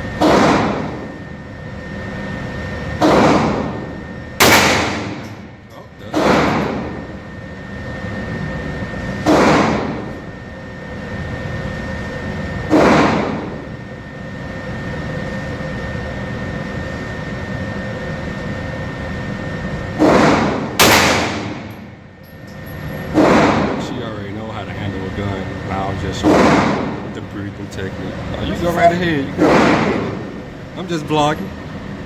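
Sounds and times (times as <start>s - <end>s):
steady background hum: 0.0s - 32.0s
pistol shots: 3.0s - 3.8s, 4.4s - 5.4s, 6.1s - 6.9s, 9.2s - 10.1s, 20.0s - 21.8s, 23.1s - 23.8s, 29.4s - 30.0s.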